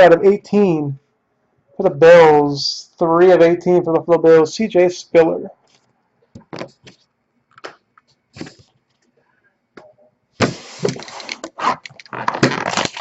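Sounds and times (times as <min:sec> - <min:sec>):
cardboard packaging crackling: 0:10.9 - 0:13.0.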